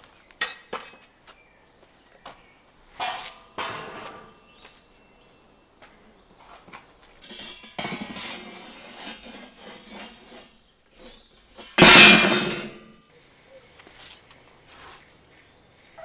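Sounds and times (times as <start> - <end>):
metal cookware clattering: 3.0 - 4.4, 7.2 - 12.9
loud metal clang: 11.8 - 12.9.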